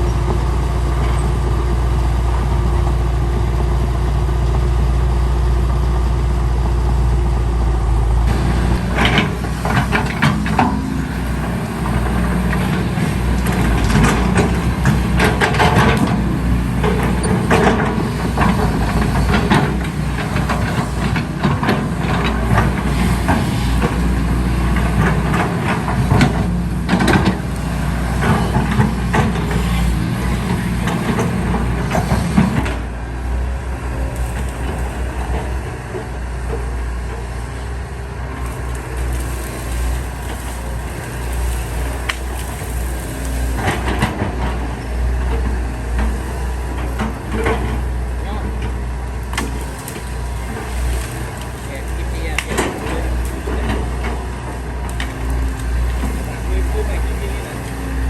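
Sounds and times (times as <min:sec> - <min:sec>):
diesel engine running: 0:00.0 - 0:58.0
machine clanks and knocks: 0:08.3 - 0:32.8, 0:38.3 - 0:57.8.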